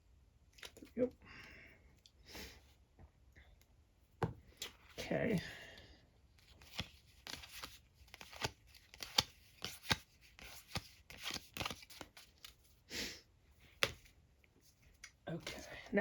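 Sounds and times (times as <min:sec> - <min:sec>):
card rustle: 0:06.4 - 0:12.8
trading cards clicking and snapping: 0:06.6 - 0:12.6, 0:13.8 - 0:14.1.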